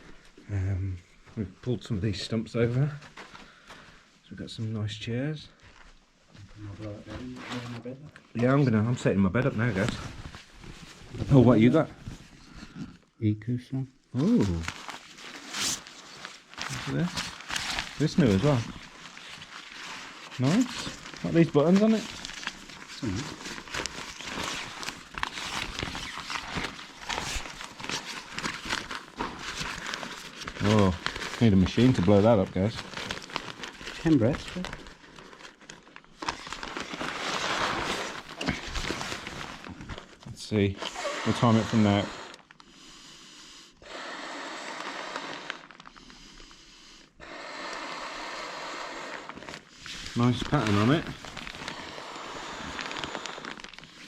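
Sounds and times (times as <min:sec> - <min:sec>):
rustling and scuffing fabric: 0:02.1 - 0:04.7, 0:05.5 - 0:08.8, 0:09.4 - 0:12.7
person blowing into valve: 0:40.8 - 0:42.4, 0:43.8 - 0:45.7, 0:47.2 - 0:49.4.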